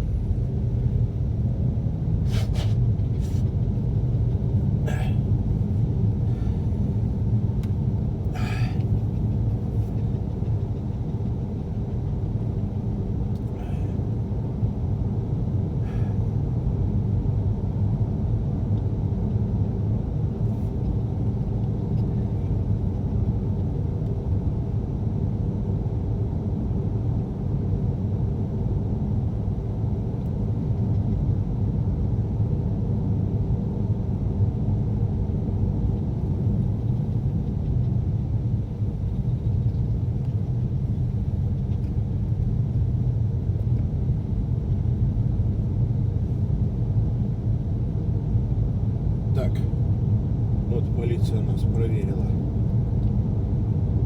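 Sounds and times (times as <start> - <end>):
road noise: 0.0 - 16.9, 35.9 - 54.0
car engine rumble: 0.0 - 54.0.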